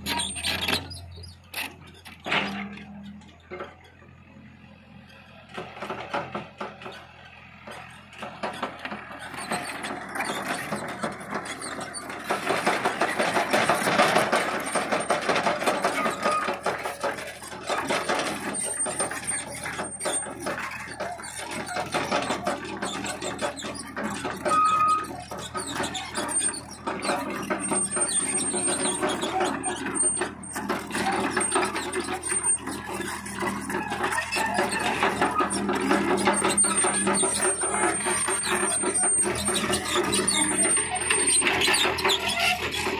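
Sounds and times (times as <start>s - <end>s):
excavator engine under load: 0.0s - 42.9s
high squeals: 9.2s - 42.9s.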